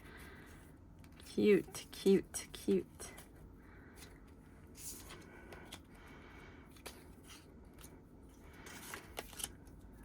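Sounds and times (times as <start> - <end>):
paper rustling: 3.2 - 5.9, 6.7 - 9.8.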